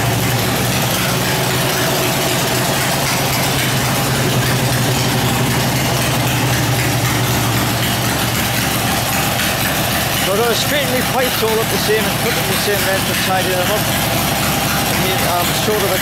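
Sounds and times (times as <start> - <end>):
mower engine idling: 0.0 - 16.0.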